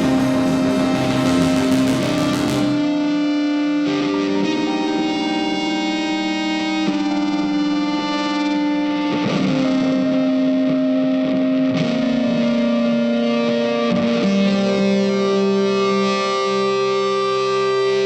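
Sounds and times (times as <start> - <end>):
background music with long held chords: 0.0 - 13.8.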